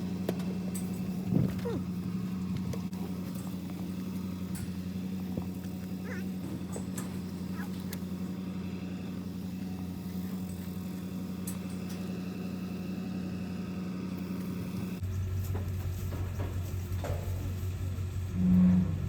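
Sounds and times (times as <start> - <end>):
vehicle engine idling: 0.0 - 19.0.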